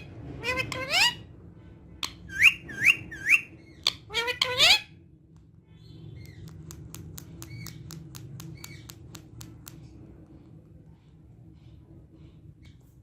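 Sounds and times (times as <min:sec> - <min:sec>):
parrot high chirps: 0:00.0 - 0:01.4, 0:02.0 - 0:05.2, 0:05.8 - 0:09.2
parrot clicking: 0:06.2 - 0:10.1.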